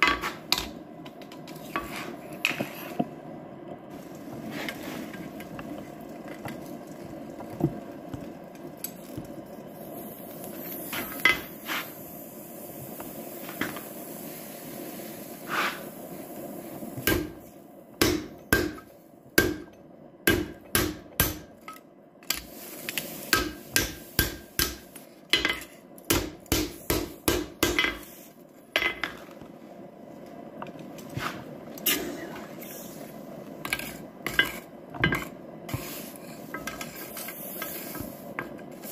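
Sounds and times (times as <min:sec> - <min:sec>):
hammer striking steel on anvil: 0:18.0 - 0:18.8, 0:19.4 - 0:19.7, 0:20.3 - 0:21.5, 0:23.3 - 0:24.8.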